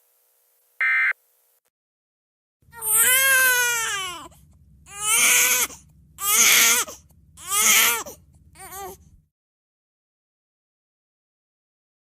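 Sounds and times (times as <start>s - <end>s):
baby crying: 2.7s - 9.0s.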